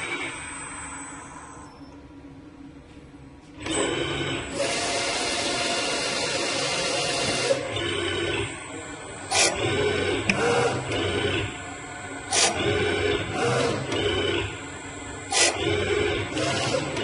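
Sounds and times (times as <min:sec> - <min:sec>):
milling machine drives whining: 0:03.6 - 0:17.0.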